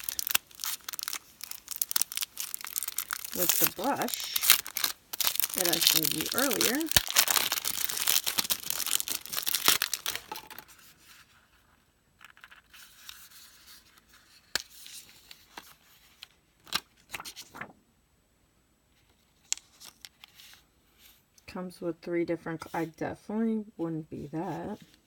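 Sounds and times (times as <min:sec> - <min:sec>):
packaging tearing and crinkling: 0:00.0 - 0:10.7.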